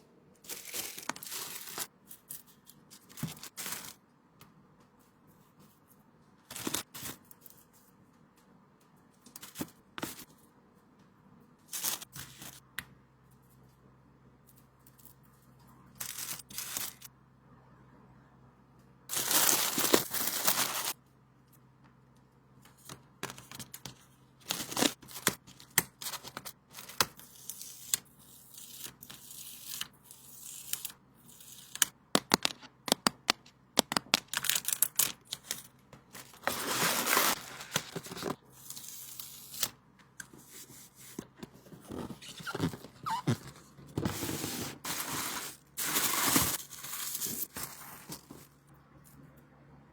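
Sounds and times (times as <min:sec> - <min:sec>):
plastic and paper crinkling: 0:00.4 - 0:01.9, 0:19.1 - 0:21.0, 0:23.2 - 0:27.0, 0:34.0 - 0:38.7, 0:40.4 - 0:48.5.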